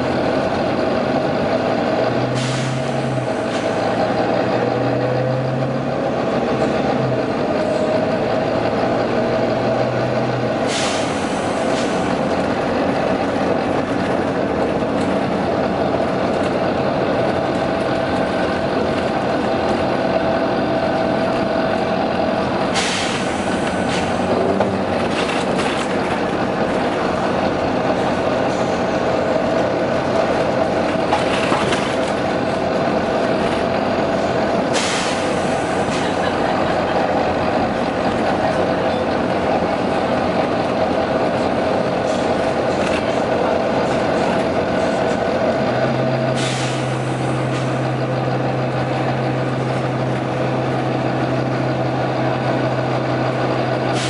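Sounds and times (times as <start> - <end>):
bus engine running: 0.0 - 54.0
compressed-air hiss: 34.7 - 35.7.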